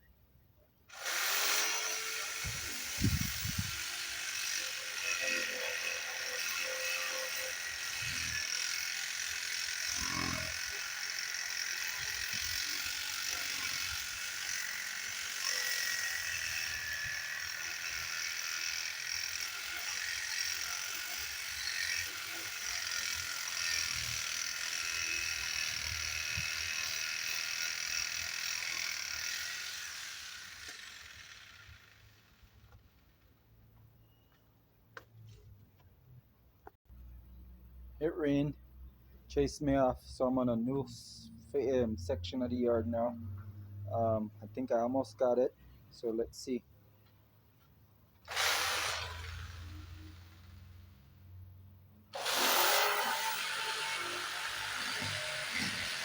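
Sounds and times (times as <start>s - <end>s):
electric power tool running: 0.9s - 33.1s, 48.3s - 50.9s, 52.2s - 56.0s.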